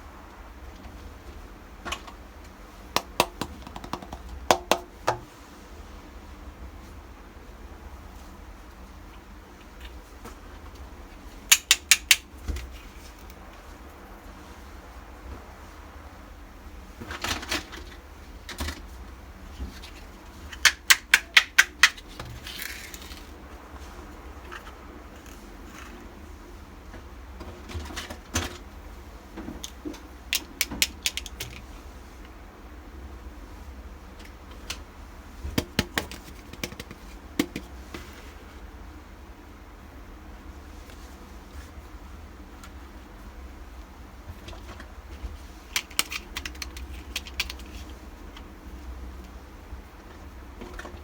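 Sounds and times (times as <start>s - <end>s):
toy kitchen pieces clicking: 11.5s - 12.3s, 20.5s - 23.3s, 29.6s - 31.7s, 45.7s - 47.9s.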